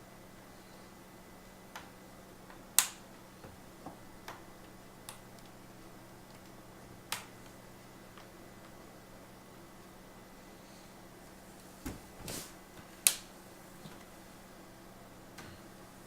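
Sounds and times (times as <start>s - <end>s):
plastic clips snapping into place: 2.8s - 3.0s, 13.0s - 13.3s.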